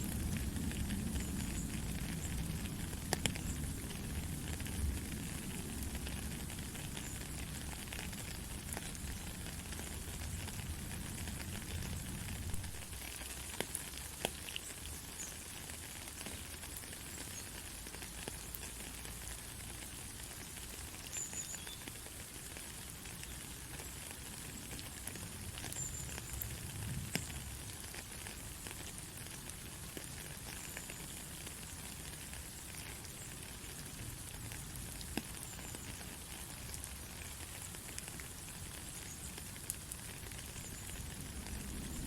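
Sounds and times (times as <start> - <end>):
steady rain patter: 0.0 - 42.0.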